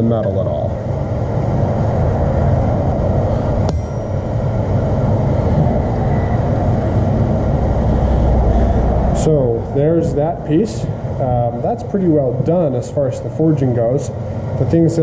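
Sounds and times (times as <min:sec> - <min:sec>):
sharp metallic tick and ring: 0:03.6 - 0:06.3.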